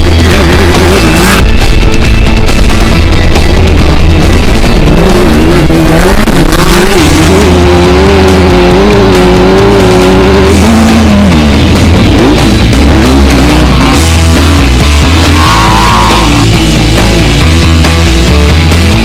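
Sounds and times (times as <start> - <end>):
race car engine running hard: 0.0 - 19.0
rock music: 0.0 - 19.0.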